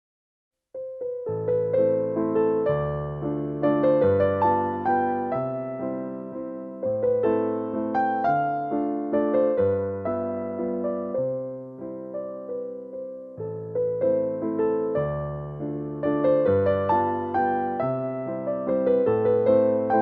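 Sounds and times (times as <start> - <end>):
electric piano melody: 0.8 - 20.0.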